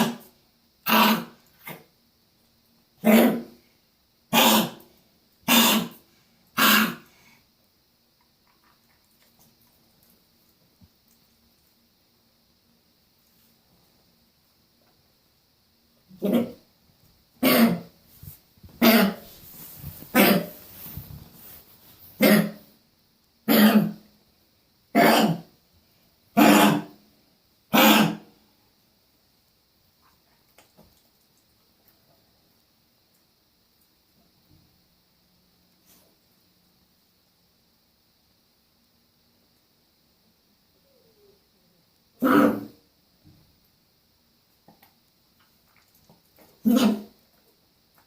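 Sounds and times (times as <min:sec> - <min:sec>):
dog coughing: 0:00.0 - 0:01.8, 0:03.0 - 0:03.6, 0:04.3 - 0:06.0, 0:06.6 - 0:07.1, 0:16.2 - 0:16.6, 0:17.4 - 0:17.9, 0:18.8 - 0:19.3, 0:20.1 - 0:20.6, 0:22.2 - 0:22.7, 0:23.4 - 0:24.0, 0:24.9 - 0:25.5, 0:26.4 - 0:27.0, 0:27.7 - 0:28.3, 0:42.2 - 0:42.8, 0:46.6 - 0:47.2.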